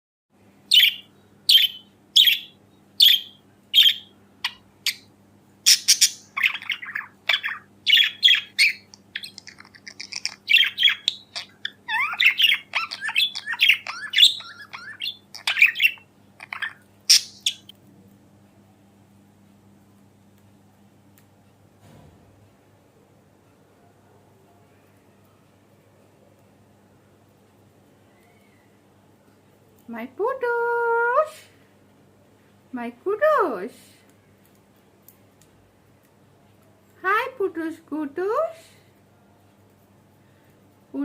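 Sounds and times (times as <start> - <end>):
faint low hum: 0.4 - 41.0
budgerigars chirping: 0.7 - 5.1, 5.7 - 17.7.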